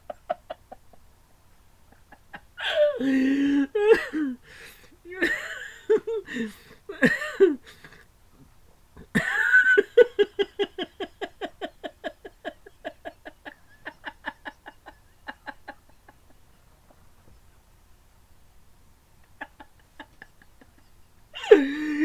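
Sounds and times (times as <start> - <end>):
man laughing hard: 2.0 - 7.8, 9.2 - 16.4, 19.2 - 22.0.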